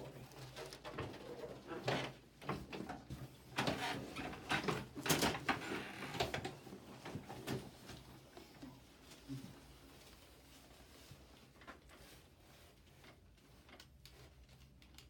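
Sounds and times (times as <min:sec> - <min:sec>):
small knocks and creaks: 0:00.4 - 0:09.5
person rustling on padded table: 0:07.2 - 0:14.7.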